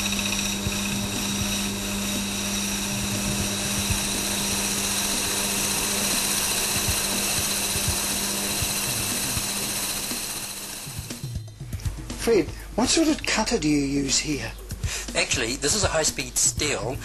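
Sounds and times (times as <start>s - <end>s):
lathe motor hum: 0.0s - 11.4s
steel cutter cutting wood: 0.0s - 11.4s.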